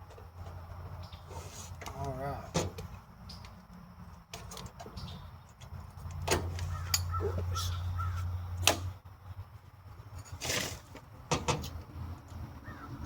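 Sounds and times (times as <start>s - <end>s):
crows cawing: 6.6s - 8.2s, 12.6s - 13.0s.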